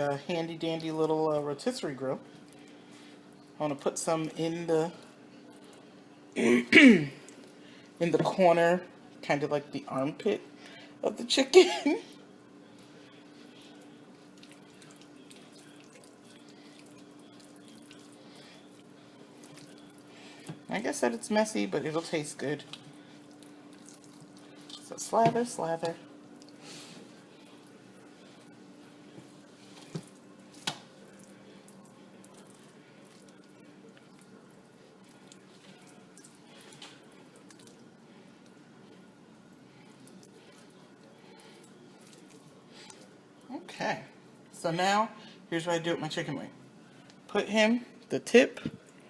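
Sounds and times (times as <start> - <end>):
steady low hum: 0.0 - 49.0
hands squishing wet paste: 12.7 - 20.7, 22.1 - 26.6, 29.4 - 38.6, 39.6 - 43.5
hands squelching on raw chicken: 29.0 - 38.6.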